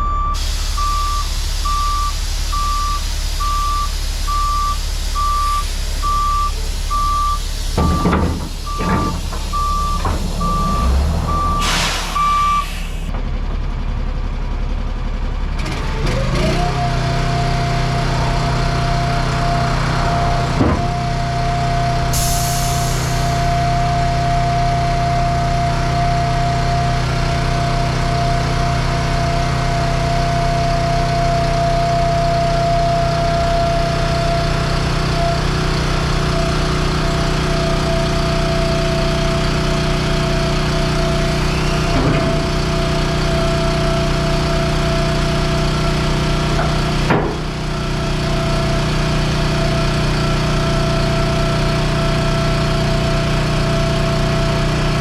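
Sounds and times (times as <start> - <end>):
diesel engine running: 0.0 - 55.0.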